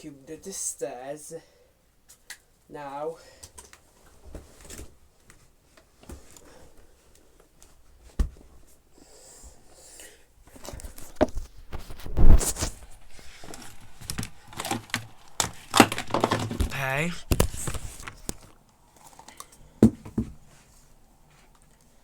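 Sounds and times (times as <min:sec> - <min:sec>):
clatter and rustling: 0:10.6 - 0:19.2.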